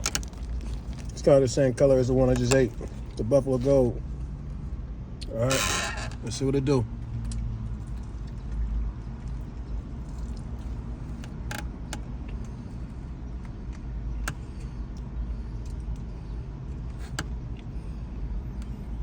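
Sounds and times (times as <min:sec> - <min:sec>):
vehicle engine rumble: 0:00.0 - 0:19.0
person eating smacking: 0:07.3 - 0:11.4.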